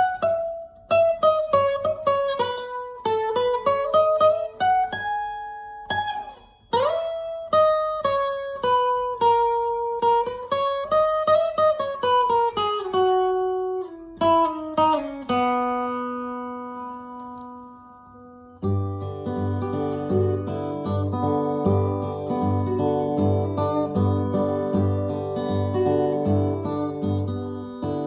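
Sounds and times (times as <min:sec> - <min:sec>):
acoustic guitar melody: 0:00.0 - 0:28.0.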